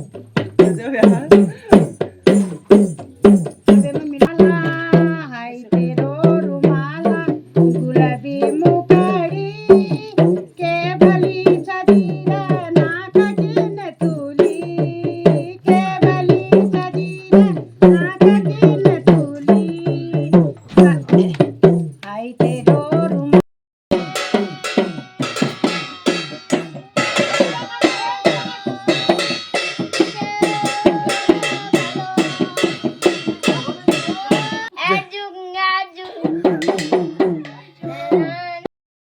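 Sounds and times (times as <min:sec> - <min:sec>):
person singing folk melody: 0:00.6 - 0:21.4, 0:22.0 - 0:38.7
hourglass drum beating: 0:23.9 - 0:34.7.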